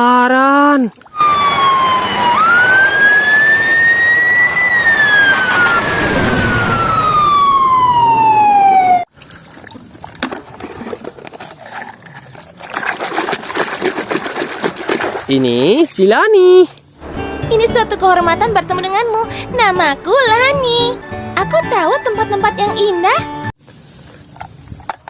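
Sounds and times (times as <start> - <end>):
fire engine siren wailing: 1.1 - 9.1.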